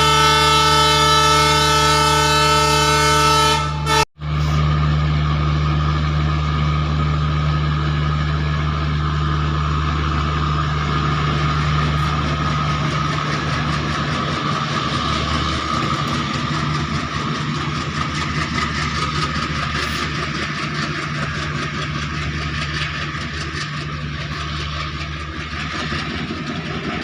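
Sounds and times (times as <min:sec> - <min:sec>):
locomotive horn: 0:00.0 - 0:04.6
locomotive running hum: 0:00.0 - 0:27.0.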